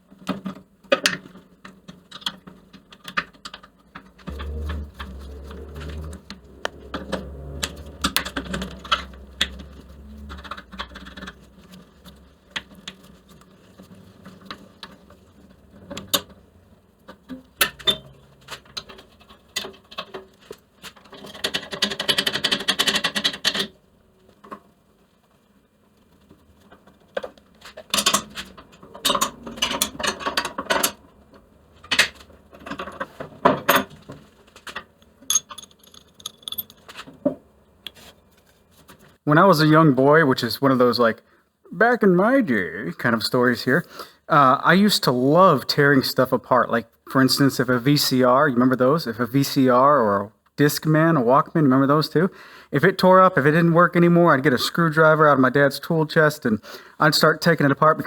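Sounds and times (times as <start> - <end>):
metal tools clinking and knocking: 35.0 - 37.1
metal parts rattling: 35.1 - 37.1.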